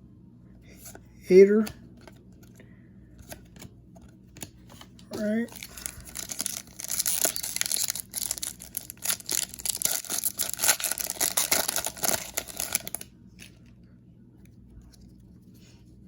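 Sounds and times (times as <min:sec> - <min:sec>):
foil wrapper tearing and crinkling: 0:05.2 - 0:13.1.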